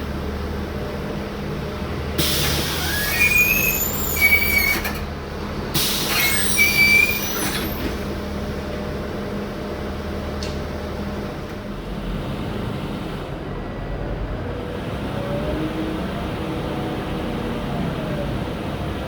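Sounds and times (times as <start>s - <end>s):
bus engine hum: 0.0s - 19.0s
hissing and high squealing: 2.4s - 5.0s, 5.8s - 7.9s.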